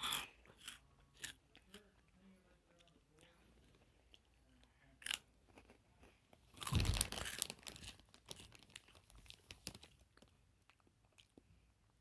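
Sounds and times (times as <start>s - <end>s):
close crinkling and rustling: 6.6s - 10.1s.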